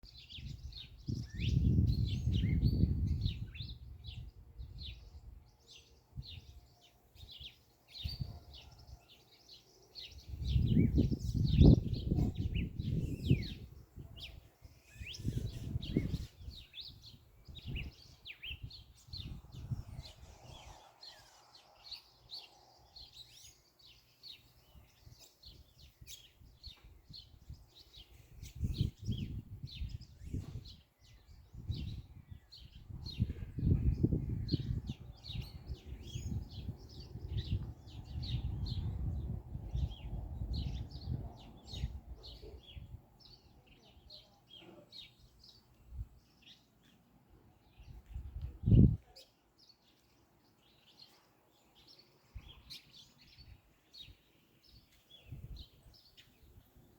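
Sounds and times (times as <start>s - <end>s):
birds chirping and singing: 0.0s - 56.9s.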